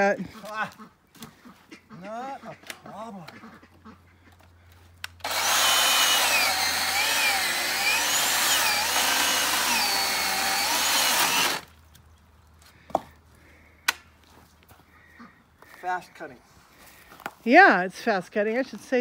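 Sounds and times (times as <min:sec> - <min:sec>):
electric chainsaw cutting log: 0:05.2 - 0:11.7.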